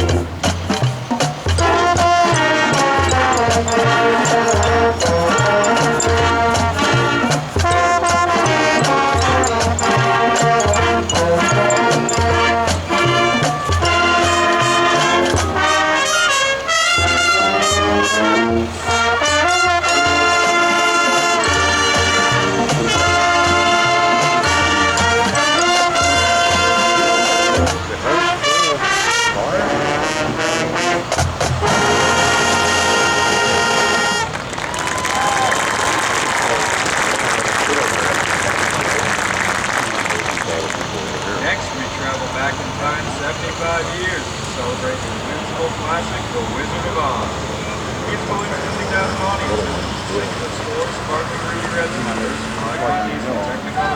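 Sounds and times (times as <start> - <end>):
steady low drum beat: 0.0 - 16.0
trombones and trumpets melody: 0.0 - 34.6
marching band playing: 0.0 - 45.2.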